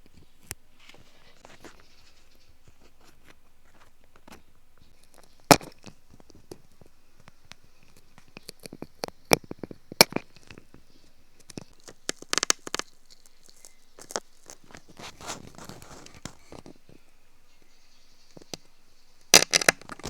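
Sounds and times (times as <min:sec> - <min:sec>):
tools scraping bamboo: 0:11.5 - 0:16.8.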